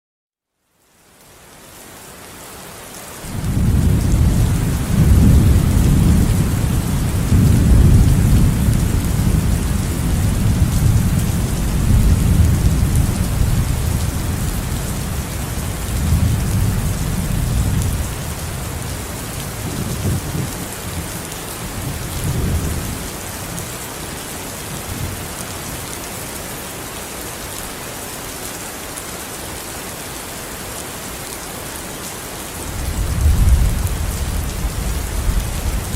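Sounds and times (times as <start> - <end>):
heavy rain: 0.8 - 35.9
rolling thunder: 3.3 - 18.9, 32.8 - 35.9.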